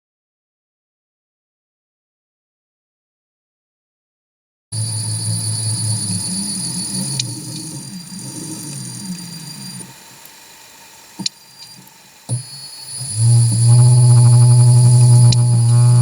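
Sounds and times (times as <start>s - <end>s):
wavering low hum: 4.8s - 10.2s, 12.3s - 16.0s
high-pitched electronic whine: 4.8s - 16.0s.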